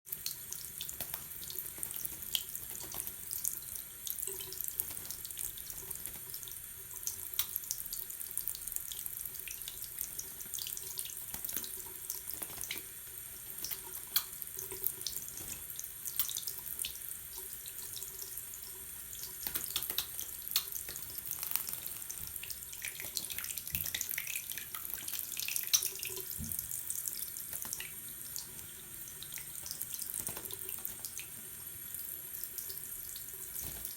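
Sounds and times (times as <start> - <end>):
small splashes and drips: 0.1 - 33.9
water running: 0.1 - 33.9.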